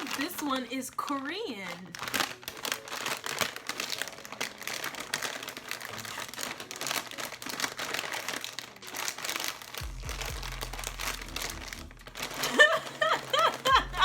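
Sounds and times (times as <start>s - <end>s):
plastic chip bag crinkling: 0.0s - 14.0s.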